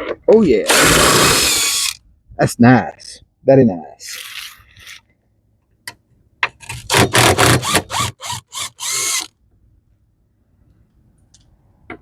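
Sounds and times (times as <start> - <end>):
power tool trigger bursts: 0.7 - 2.0, 6.9 - 9.3.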